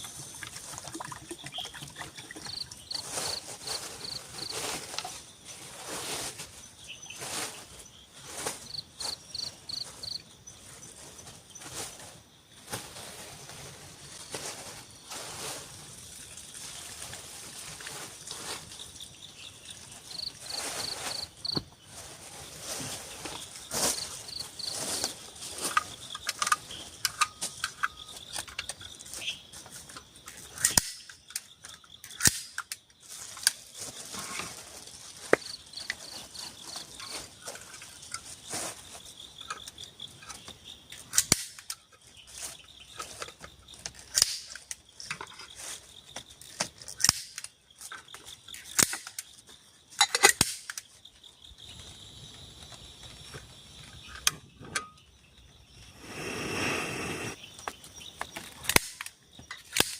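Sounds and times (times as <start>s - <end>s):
forest insects chirring: 0.0s - 59.9s
sharp cracks and knocks: 41.0s - 41.8s, 43.2s - 45.4s, 48.6s - 49.3s, 50.0s - 50.9s, 57.7s - 59.9s.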